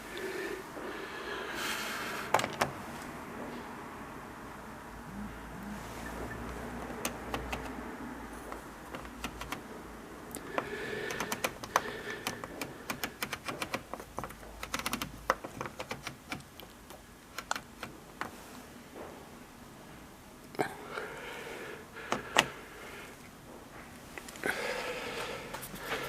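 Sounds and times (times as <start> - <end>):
faint low hum: 0.0 - 26.0
faint steady tone: 4.6 - 6.7
sharp clicks: 11.1 - 17.9.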